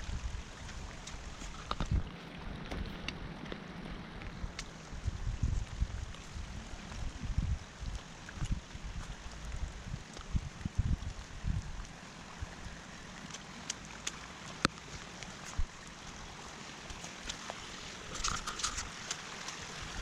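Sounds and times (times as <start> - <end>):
water rushing hiss: 11.2 - 20.0.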